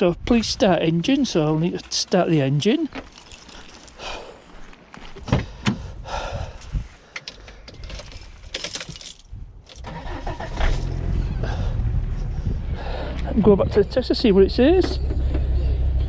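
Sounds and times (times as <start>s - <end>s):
keys jingling: 1.2s - 4.6s, 6.4s - 11.0s.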